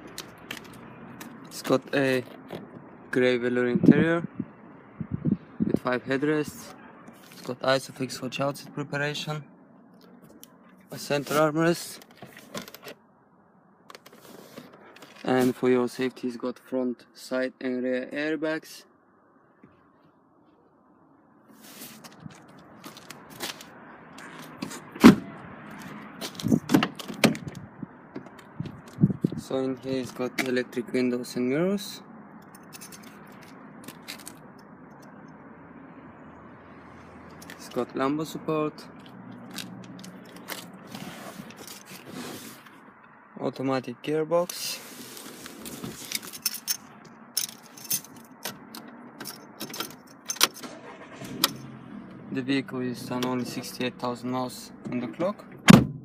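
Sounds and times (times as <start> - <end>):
car door thunk: 24.6 - 25.3, 55.5 - 56.0
car door clicks and knocks: 26.4 - 27.6, 55.5 - 56.0
car keys jangling: 32.4 - 34.4, 46.0 - 51.7.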